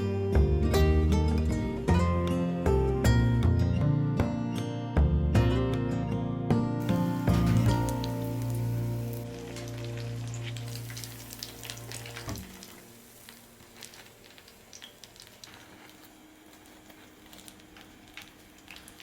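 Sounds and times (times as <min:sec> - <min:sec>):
background music: 0:00.0 - 0:13.4
oil sizzling and crackling: 0:06.8 - 0:19.0.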